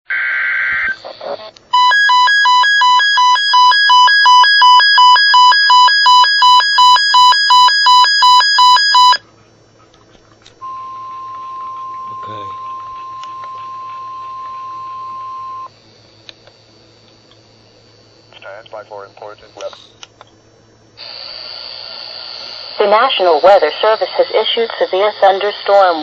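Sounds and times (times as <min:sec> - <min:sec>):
steady single-pitch alarm tone: 0:01.7 - 0:09.2, 0:10.6 - 0:15.8, 0:21.0 - 0:25.0.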